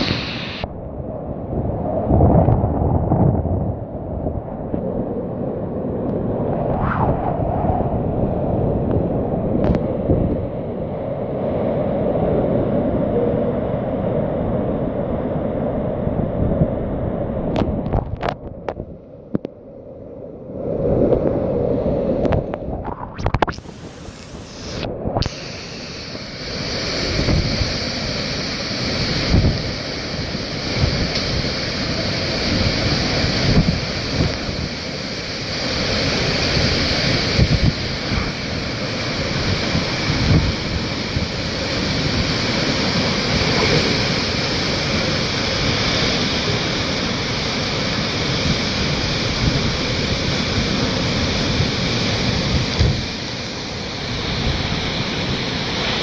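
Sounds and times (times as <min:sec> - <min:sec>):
wind buffeting microphone: 0:00.0 - 0:19.6, 0:20.4 - 0:56.0.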